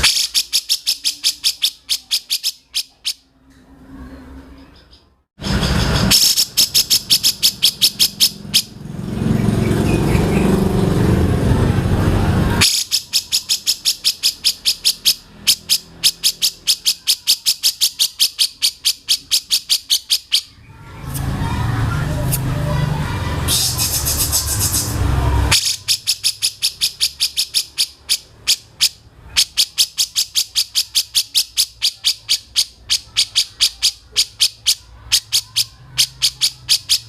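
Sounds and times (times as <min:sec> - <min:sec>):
bird calling sharp repeated notes: 0:00.0 - 0:03.3, 0:04.8 - 0:08.8, 0:12.6 - 0:20.7, 0:23.5 - 0:37.0.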